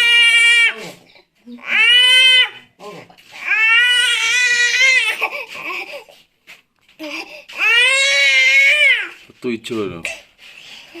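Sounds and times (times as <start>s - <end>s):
child crying: 0.0s - 0.8s, 1.5s - 2.6s, 3.4s - 6.1s, 7.0s - 9.1s.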